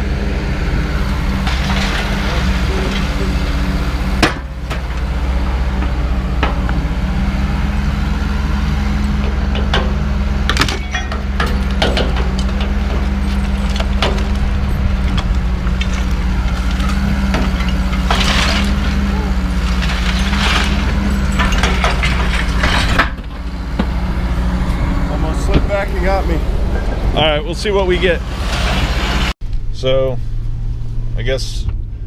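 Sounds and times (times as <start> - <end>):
vehicle engine droning: 0.0 - 32.0
sharp knocks and clanks: 1.1 - 24.3.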